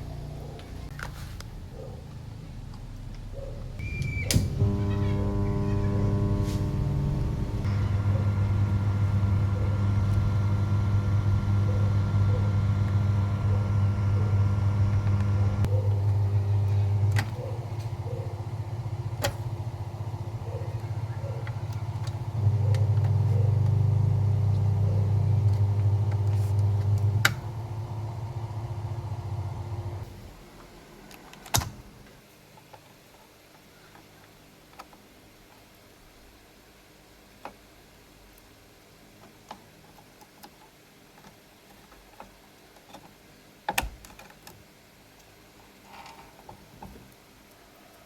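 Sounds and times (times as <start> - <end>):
amplifier hum through speaker: 3.0 - 30.0.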